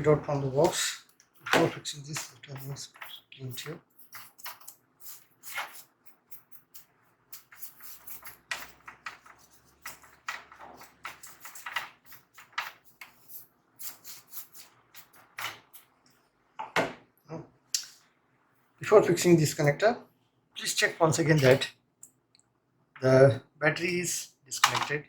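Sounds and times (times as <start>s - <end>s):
rubbing and wiping strokes: 2.2s - 15.9s.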